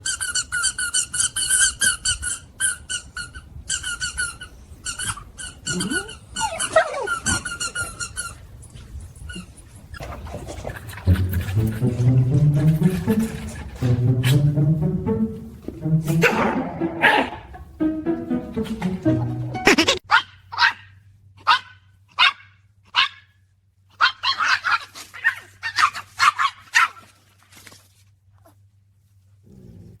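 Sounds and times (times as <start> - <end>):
dog whining: 5.0 - 8.5
dog barking: 16.1 - 17.5, 20.1 - 23.3, 24.0 - 27.0.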